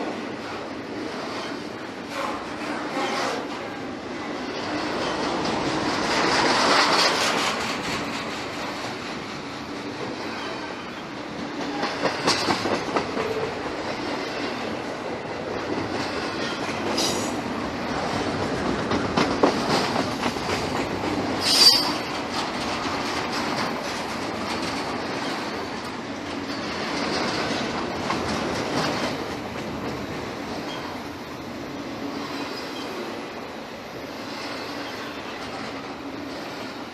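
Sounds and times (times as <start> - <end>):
freight train cars rolling past: 0.0 - 36.9
wheels clicking over rail joints: 4.6 - 31.1
wheel squeal: 21.4 - 22.1.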